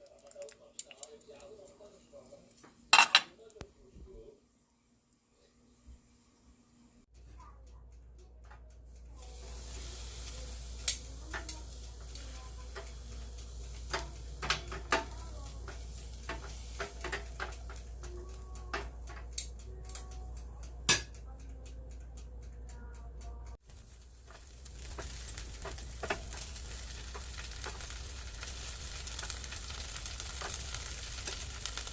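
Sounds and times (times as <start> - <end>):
meat sizzling on grill: 9.1 - 20.1, 23.6 - 31.9
utensils clattering on cookware: 12.4 - 17.8.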